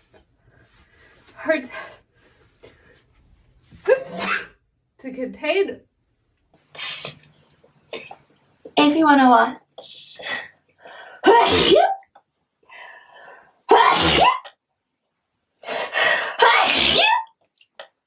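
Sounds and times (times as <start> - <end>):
woman sneezing: 3.8 - 4.6, 11.2 - 12.0, 13.7 - 14.5, 16.4 - 17.3.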